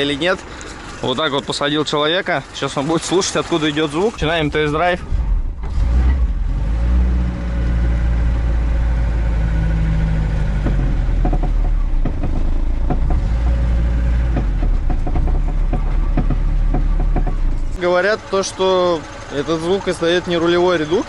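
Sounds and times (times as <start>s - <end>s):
car engine pulling away: 3.5s - 21.0s
short clicks and knocks: 14.3s - 17.8s.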